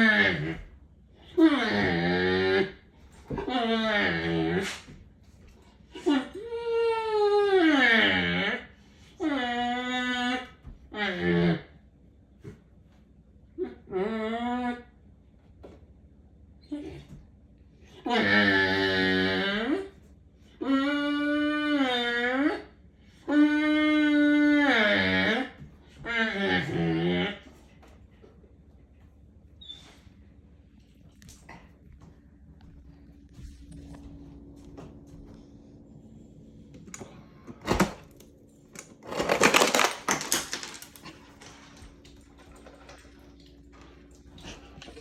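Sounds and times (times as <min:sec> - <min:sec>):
fridge low hum: 0:00.0 - 0:45.0
dog whining: 0:01.3 - 0:04.9, 0:06.0 - 0:08.6, 0:20.6 - 0:22.7, 0:23.3 - 0:27.5
ice cubes clattering: 0:38.7 - 0:43.5.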